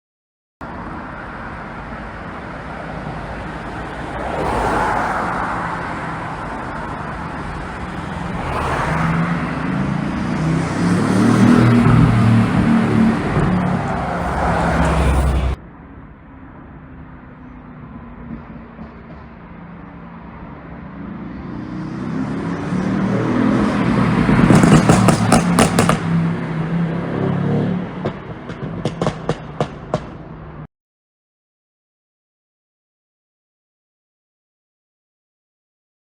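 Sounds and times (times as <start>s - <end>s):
car engine exhaust roaring: 3.2s - 15.6s.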